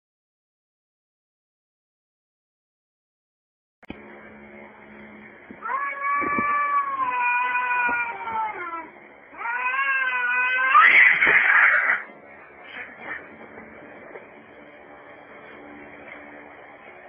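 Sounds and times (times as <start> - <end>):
cats yowling: 5.6 - 12.1.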